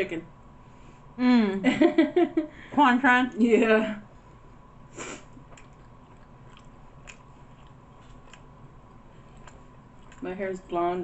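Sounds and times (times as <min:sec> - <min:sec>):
faint close-up chewing: 0:05.3 - 0:10.8.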